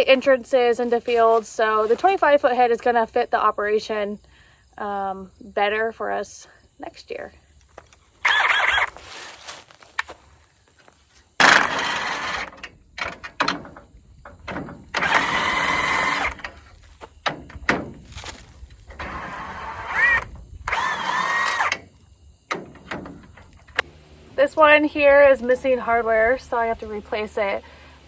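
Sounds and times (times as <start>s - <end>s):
cordless drill running: 8.2s - 9.0s, 11.4s - 12.6s, 14.9s - 16.6s, 19.0s - 21.9s.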